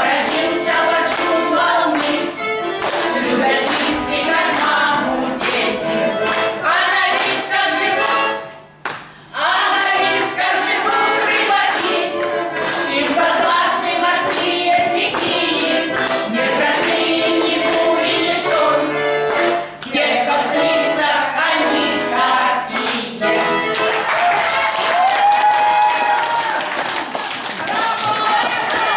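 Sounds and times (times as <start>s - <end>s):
voices singing: 0.0s - 8.5s, 9.4s - 24.0s
instrumental accompaniment: 0.0s - 24.4s.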